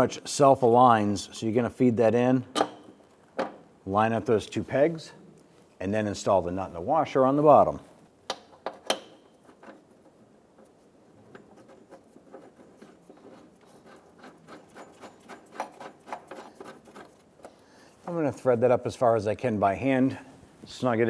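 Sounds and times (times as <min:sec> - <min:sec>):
metal latch clicks: 0:02.5 - 0:03.6, 0:08.3 - 0:09.8
light metal scraping: 0:09.1 - 0:18.3.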